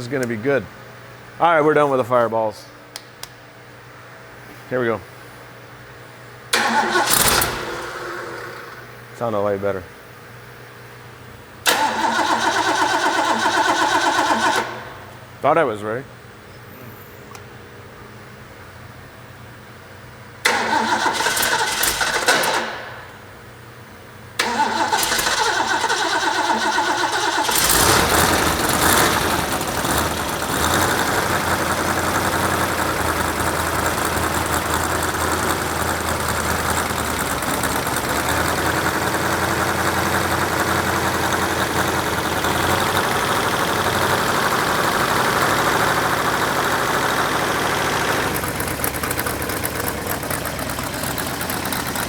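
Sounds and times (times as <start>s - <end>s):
engine starter cranking: 6.5s - 8.9s, 11.7s - 15.0s, 20.4s - 23.0s, 24.4s - 52.0s
engine revving and running: 6.7s - 8.8s, 24.6s - 52.0s.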